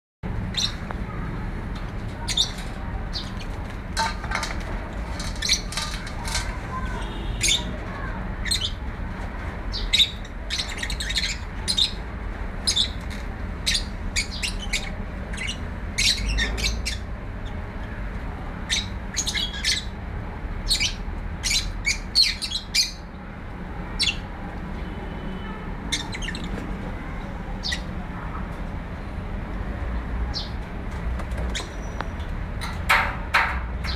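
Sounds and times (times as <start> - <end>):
small bird chirping: 9.7 - 12.0, 13.6 - 17.6, 18.7 - 20.0, 25.9 - 26.5.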